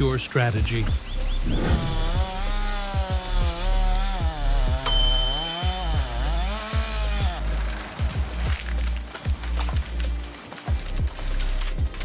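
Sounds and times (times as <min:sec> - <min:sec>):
chainsaw cutting wood: 0:01.8 - 0:09.3.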